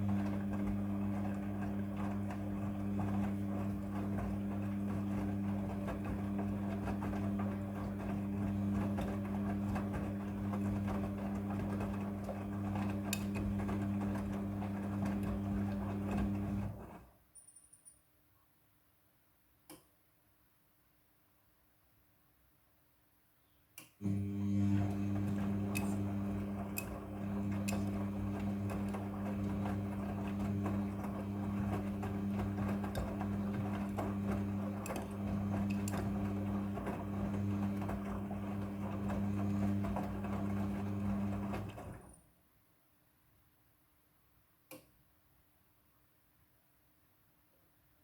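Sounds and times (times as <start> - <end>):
washing machine running: 0.0 - 17.1, 24.0 - 42.2
faint click: 23.8 - 24.0, 44.7 - 44.9.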